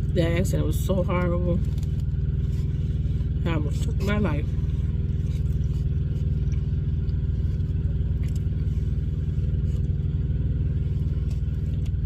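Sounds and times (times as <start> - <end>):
diesel truck engine running: 0.0 - 12.0.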